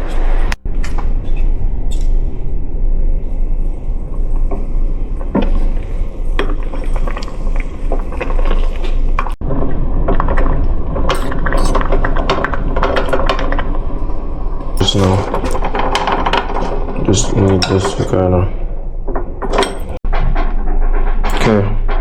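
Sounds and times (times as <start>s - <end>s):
steady low rumble: 0.0s - 22.0s
dishes and utensils clinking: 11.1s - 12.0s, 19.5s - 20.0s.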